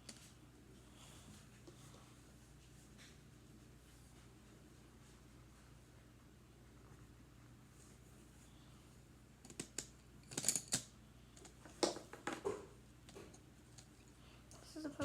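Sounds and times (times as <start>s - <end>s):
pencils clicking and rattling: 9.4s - 12.3s.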